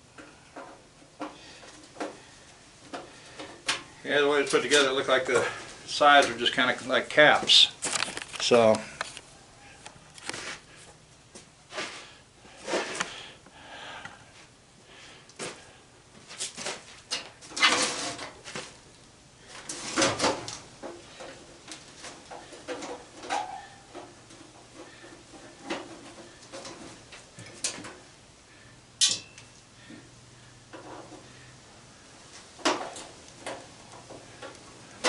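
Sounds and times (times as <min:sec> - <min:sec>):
sheet metal clanks and scrapes: 0:16.7 - 0:18.6, 0:19.6 - 0:21.4, 0:22.0 - 0:28.0.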